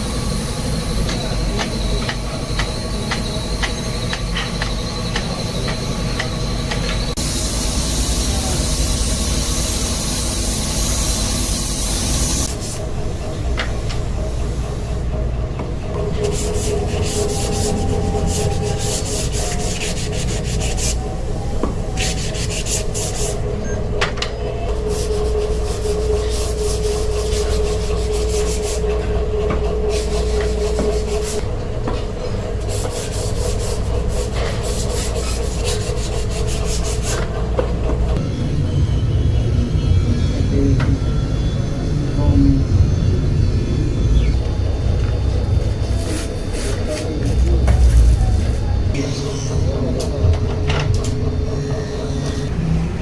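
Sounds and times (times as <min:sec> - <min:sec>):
low workshop rumble: 0:00.0 - 0:53.0
machine hum: 0:00.0 - 0:53.0
hand sanding wood: 0:16.2 - 0:21.0, 0:21.9 - 0:23.4, 0:24.8 - 0:31.4, 0:32.6 - 0:37.3.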